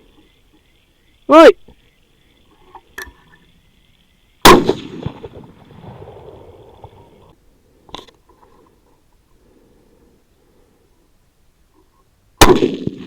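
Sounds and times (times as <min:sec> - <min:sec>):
rifle shot: 0:04.4 - 0:06.4, 0:12.4 - 0:13.0.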